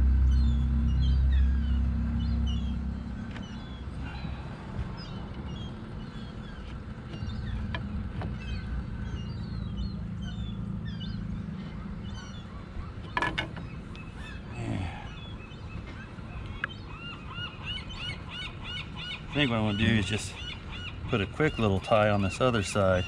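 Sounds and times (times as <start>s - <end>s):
birds calling: 0.0s - 23.0s
low steady rumble: 0.0s - 23.0s
clatter of knocks: 13.1s - 13.7s.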